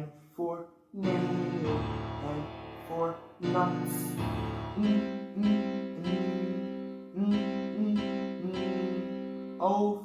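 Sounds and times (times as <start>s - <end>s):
keyboard playing simple tune: 1.0s - 9.9s.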